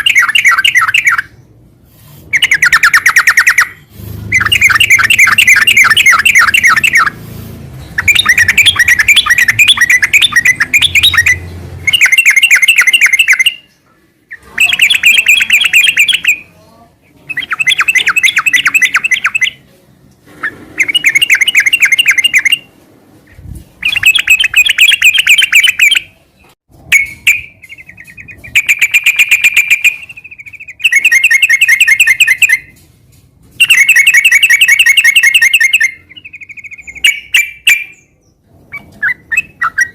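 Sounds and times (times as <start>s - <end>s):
bird chattering song: 0.0s - 1.6s, 2.3s - 7.2s, 7.8s - 19.6s, 20.4s - 22.7s, 23.3s - 32.8s, 33.6s - 39.9s.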